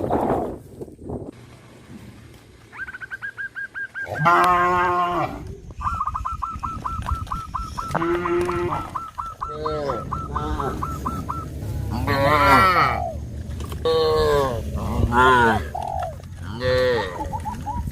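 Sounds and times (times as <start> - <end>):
cows mooing: 4.0 - 5.5, 7.8 - 13.2, 13.8 - 15.7, 16.4 - 17.4.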